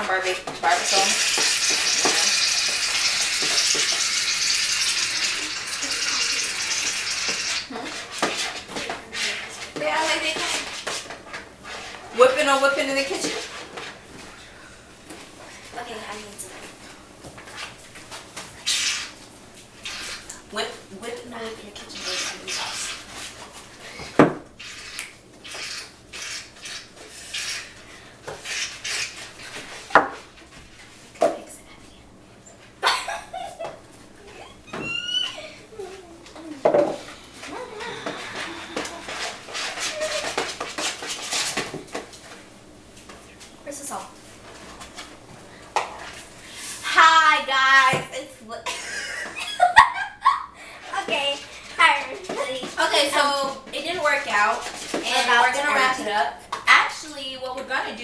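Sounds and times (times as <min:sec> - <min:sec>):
utensil stirring in mixing bowl: 0:00.0 - 0:14.2, 0:17.4 - 0:23.9, 0:24.5 - 0:30.5, 0:37.0 - 0:43.2, 0:50.8 - 0:56.7.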